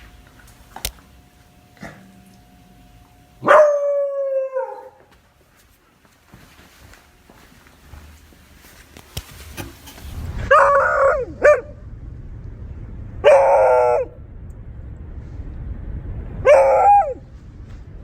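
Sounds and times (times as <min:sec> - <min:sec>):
dog barking: 0:03.4 - 0:03.9, 0:04.5 - 0:05.1.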